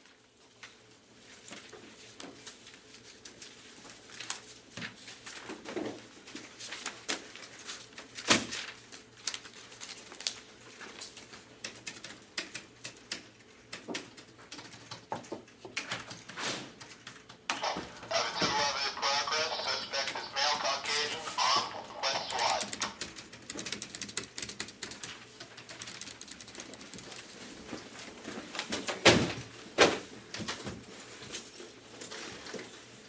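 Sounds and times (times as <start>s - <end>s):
irregular clicks and taps: 11.6s - 17.7s.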